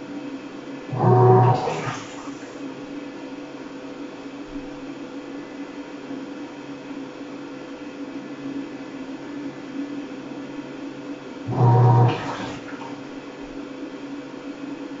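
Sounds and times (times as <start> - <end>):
washing machine humming: 0.8 - 2.9, 11.5 - 13.6
motor hum burst: 0.9 - 2.6, 11.5 - 13.2
water swishing: 0.9 - 2.6, 11.5 - 13.2.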